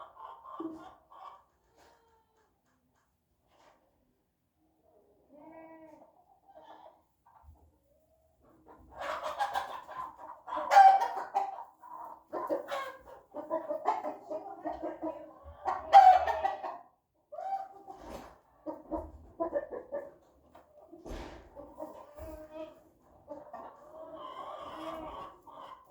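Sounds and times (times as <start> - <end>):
chicken clucking: 0.0 - 25.9
chicken loud drawn-out calls: 8.9 - 20.0, 21.7 - 25.9.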